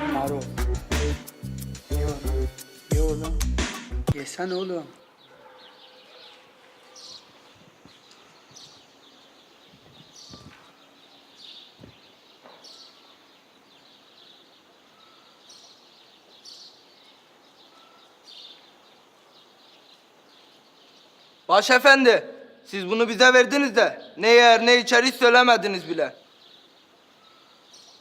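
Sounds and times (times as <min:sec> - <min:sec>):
faint outdoor ambience: 0:00.0 - 0:28.0
high bird chirps: 0:04.1 - 0:21.5, 0:26.2 - 0:28.0.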